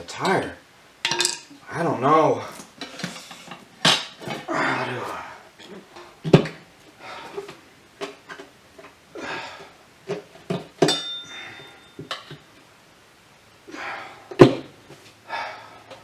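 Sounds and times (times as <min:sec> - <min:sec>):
tire irons clanking on wheel rim: 0:10.1 - 0:12.4.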